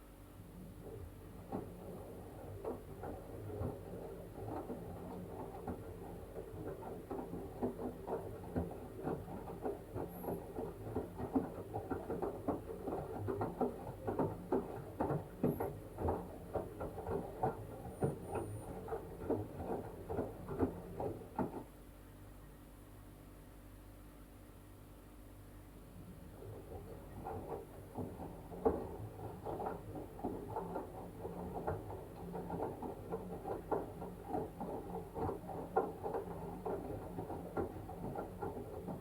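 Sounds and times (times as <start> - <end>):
washing machine motor hum: 0.0 - 21.8, 25.4 - 39.0.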